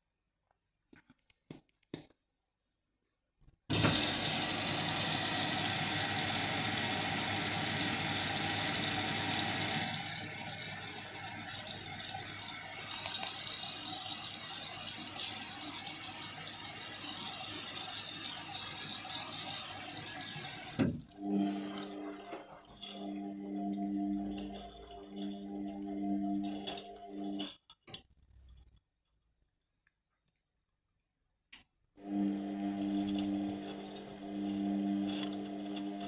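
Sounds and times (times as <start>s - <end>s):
water rushing into washing machine: 3.7s - 27.4s.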